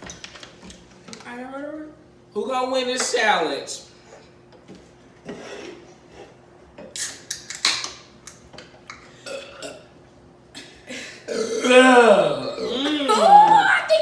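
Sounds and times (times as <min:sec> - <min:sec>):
people burping: 0:09.2 - 0:13.7.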